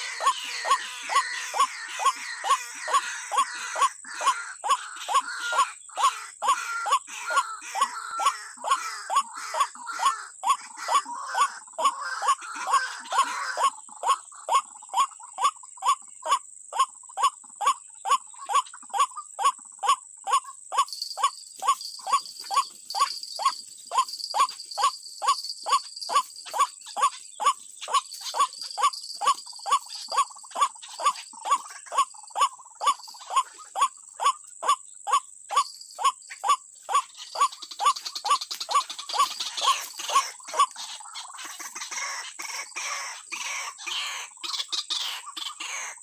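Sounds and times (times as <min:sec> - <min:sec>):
waterhen calls: 0:00.0 - 0:46.0.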